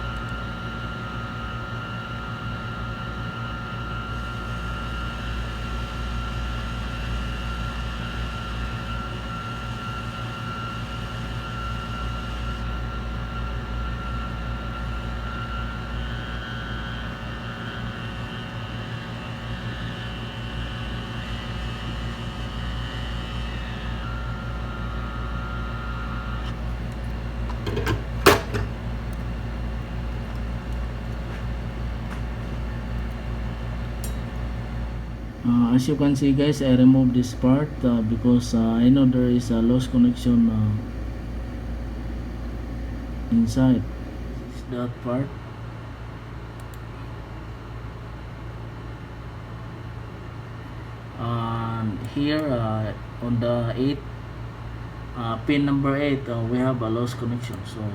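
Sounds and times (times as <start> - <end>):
small electric blower humming: 0.0 - 44.6.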